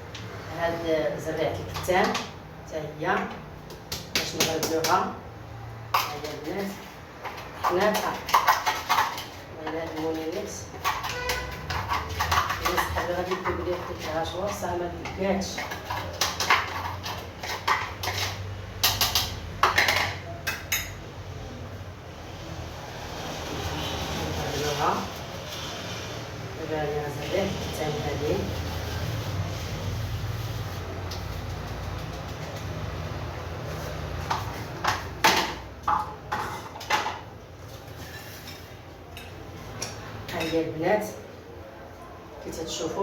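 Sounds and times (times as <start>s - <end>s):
kitchen utensils clattering: 6.0s - 21.0s, 33.8s - 40.8s.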